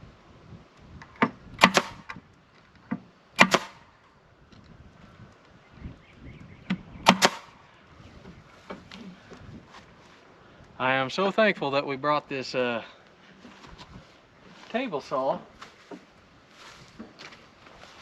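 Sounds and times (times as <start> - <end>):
nail gun firing: 1.6 - 2.2, 3.4 - 3.8, 7.0 - 7.6.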